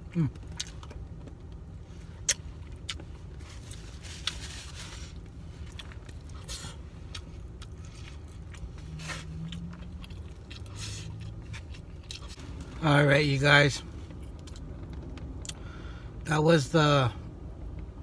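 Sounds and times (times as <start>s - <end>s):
low steady hum: 0.0s - 18.0s
person chewing rice: 0.1s - 1.0s, 1.7s - 12.8s.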